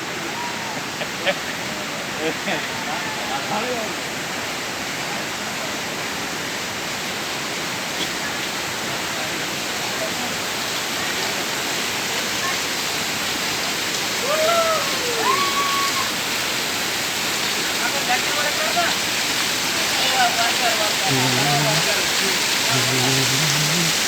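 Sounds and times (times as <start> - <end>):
waterfall rushing: 0.0 - 24.0
person speaking: 21.0 - 24.0.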